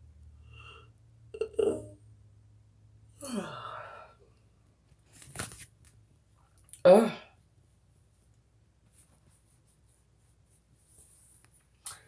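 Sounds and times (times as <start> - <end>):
woman yawning: 3.2 - 3.9.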